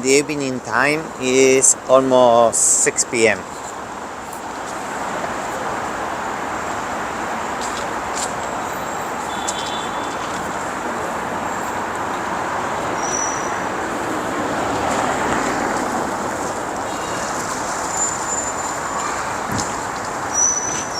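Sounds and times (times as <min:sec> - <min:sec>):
road traffic noise: 0:00.0 - 0:20.9
faint high-pitched squeaks: 0:20.3 - 0:20.9.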